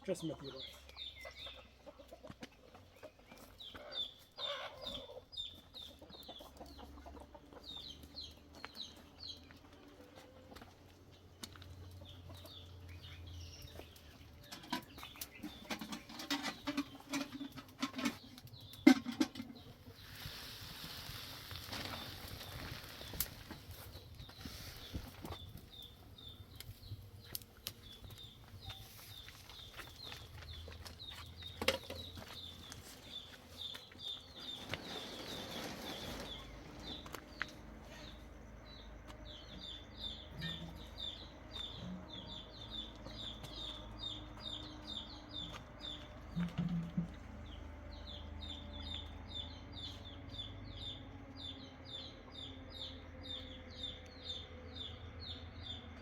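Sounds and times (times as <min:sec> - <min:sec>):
bird chirping: 0:00.0 - 0:02.1, 0:21.6 - 0:56.0.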